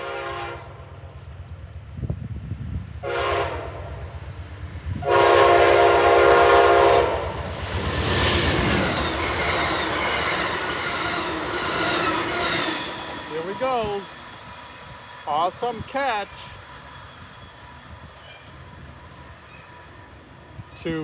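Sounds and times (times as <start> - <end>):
locomotive horn blasts: 0.0 - 0.8, 3.0 - 3.9, 5.0 - 7.4
train wheels rushing past: 3.3 - 21.0
locomotive engine rumble: 4.1 - 20.8.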